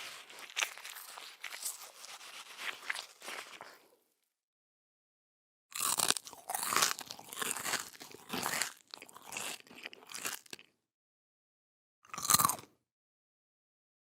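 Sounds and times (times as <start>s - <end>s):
person chewing crunchy food: 0.0s - 3.9s, 5.7s - 10.7s, 12.1s - 12.7s.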